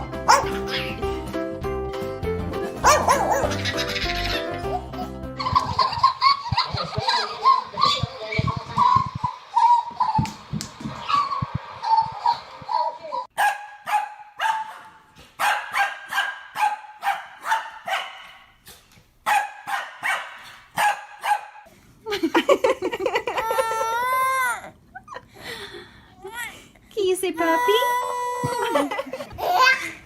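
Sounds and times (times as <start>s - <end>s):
dog barking: 0.3s - 0.7s, 2.8s - 3.6s, 13.4s - 18.5s, 19.2s - 21.7s.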